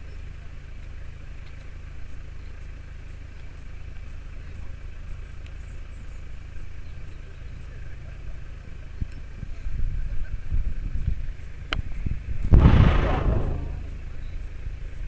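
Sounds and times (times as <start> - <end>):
vehicle engine rumbling: 12.2 - 14.8.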